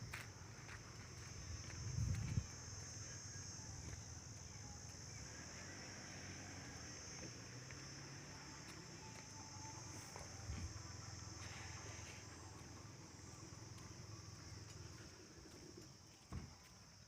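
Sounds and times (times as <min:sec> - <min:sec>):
insects chirring: 0:00.0 - 0:17.0.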